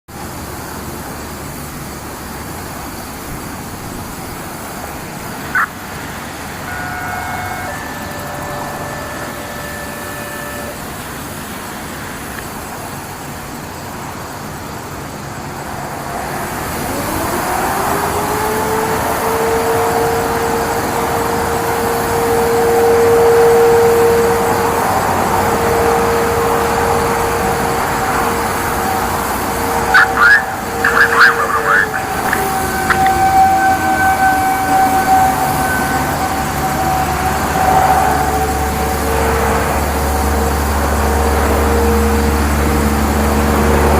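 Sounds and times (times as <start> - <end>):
road traffic: 0.1 - 43.9
warning siren wailing: 5.5 - 12.4, 16.6 - 43.9.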